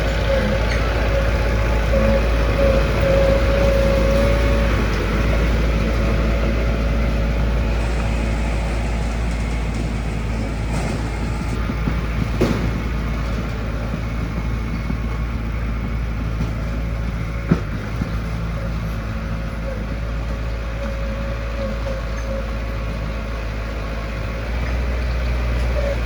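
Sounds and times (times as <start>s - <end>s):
diesel engine running: 0.0s - 26.0s.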